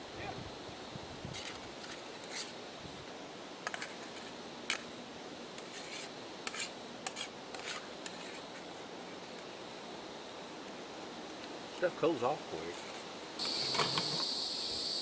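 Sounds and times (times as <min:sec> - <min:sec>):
faint steady hiss: 0:00.0 - 0:15.0
utensil scraping cookware: 0:05.6 - 0:08.6.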